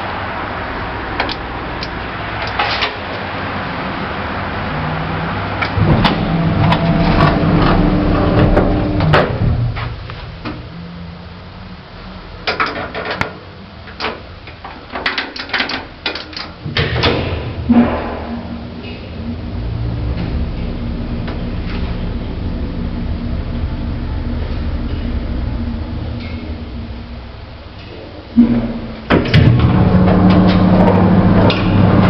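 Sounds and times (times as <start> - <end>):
lift running with low hum: 0.0 - 32.0
lift doors clicking and clunking: 12.4 - 22.1, 27.8 - 32.0.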